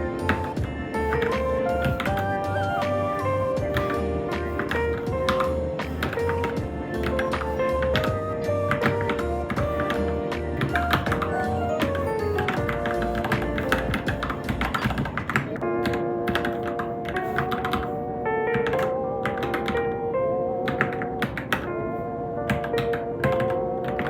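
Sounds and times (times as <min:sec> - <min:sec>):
background music with held notes: 0:00.0 - 0:24.0
mechanical keyboard typing: 0:03.7 - 0:10.0, 0:10.6 - 0:19.9, 0:20.6 - 0:21.7, 0:22.5 - 0:24.0.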